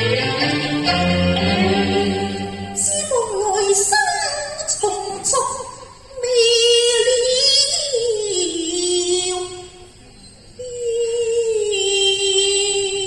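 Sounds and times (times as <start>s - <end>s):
instrumental accompaniment: 0.0s - 3.5s
woman singing opera: 1.6s - 9.7s, 10.6s - 13.0s.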